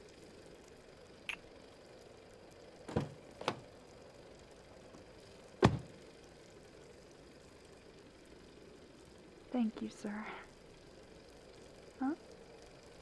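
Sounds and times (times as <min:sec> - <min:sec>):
car door closing thud: 0:02.9 - 0:03.6, 0:05.6 - 0:05.9
car door knocks: 0:02.9 - 0:03.6, 0:05.6 - 0:05.9.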